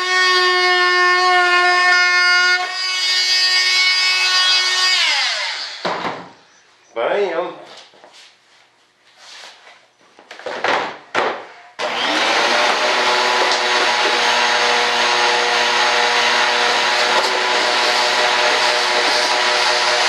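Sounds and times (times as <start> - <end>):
electric motor whirring: 11.8 - 20.0.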